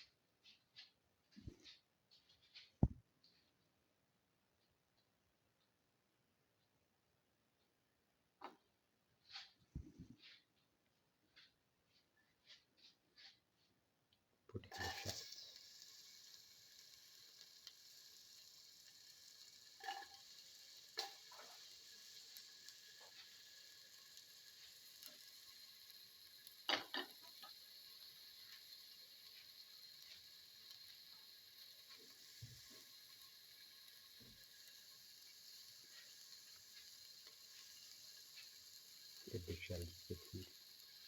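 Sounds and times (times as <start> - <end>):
shallots sizzling in oil: 14.6 - 41.0.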